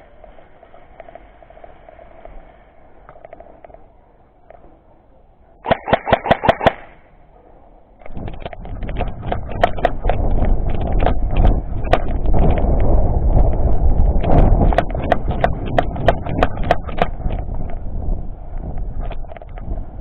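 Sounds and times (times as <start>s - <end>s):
steady low rumble: 0.0s - 20.0s
airsoft gun firing bursts: 5.6s - 7.1s.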